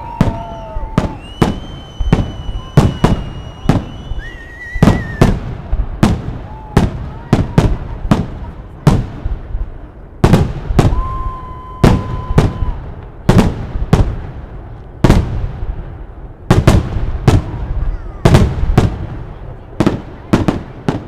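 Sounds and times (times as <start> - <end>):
fireworks bangs: 0.0 - 21.0.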